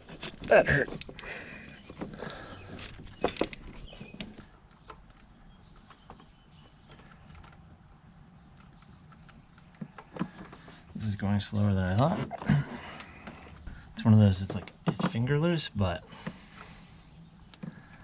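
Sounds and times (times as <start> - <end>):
hand tools clicking on engine parts: 0.2 - 10.9.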